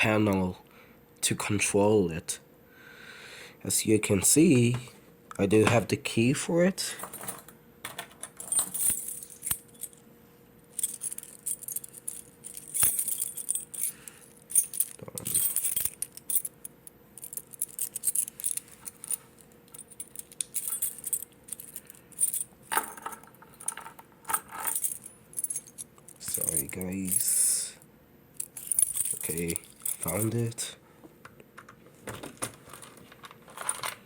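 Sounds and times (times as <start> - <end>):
keys jangling and clinking: 7.0 - 10.0, 10.8 - 27.6, 28.4 - 30.7, 32.7 - 34.0.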